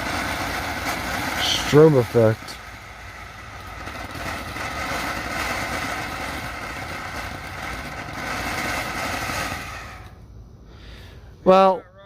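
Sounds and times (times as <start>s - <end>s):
fountain firework crackling hiss: 0.0s - 11.3s.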